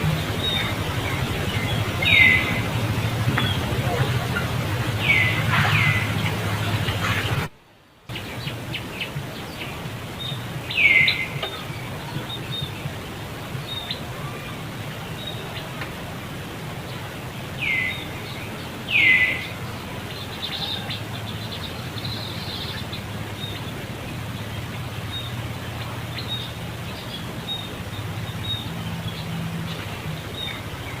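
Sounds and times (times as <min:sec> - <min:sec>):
high falling animal calls: 0:00.0 - 0:07.5.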